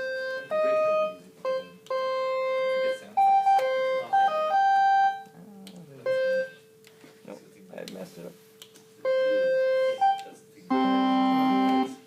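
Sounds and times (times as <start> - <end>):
chiptune synthesiser tune: 0.0 - 5.3, 6.1 - 6.6, 9.0 - 12.0.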